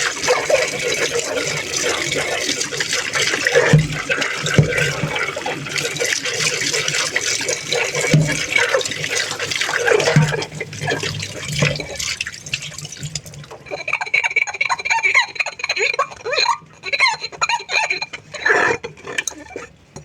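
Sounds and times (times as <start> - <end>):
tap water running: 0.0 - 20.0.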